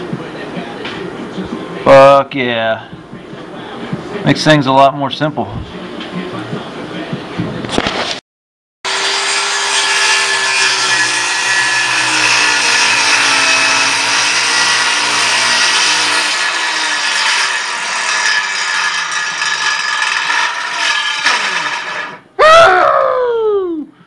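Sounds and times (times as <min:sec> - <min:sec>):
electric power tool whining: 0:08.9 - 0:22.3.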